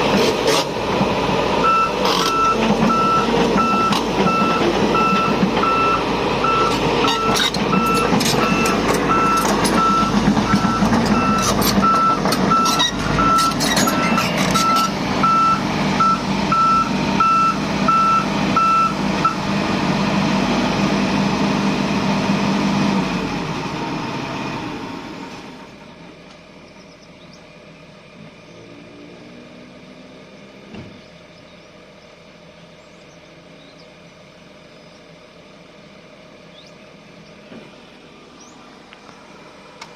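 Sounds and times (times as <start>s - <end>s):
excavator running: 0.0s - 39.9s
alarm beeping: 1.6s - 19.4s.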